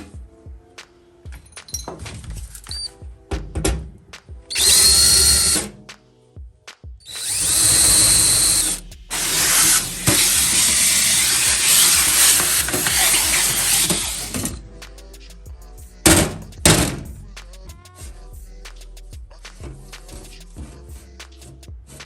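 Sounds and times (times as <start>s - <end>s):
power drill boring: 4.5s - 5.7s, 7.1s - 14.6s.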